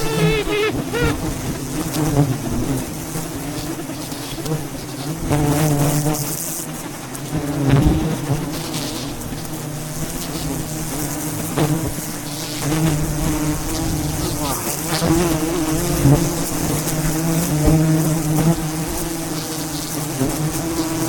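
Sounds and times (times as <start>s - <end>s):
bees buzzing: 0.0s - 6.4s.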